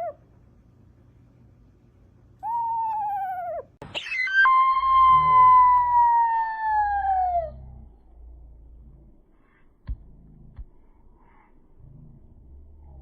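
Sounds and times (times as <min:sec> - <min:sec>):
owl wailing call: 0:02.4 - 0:07.6
low rumble: 0:04.9 - 0:13.0.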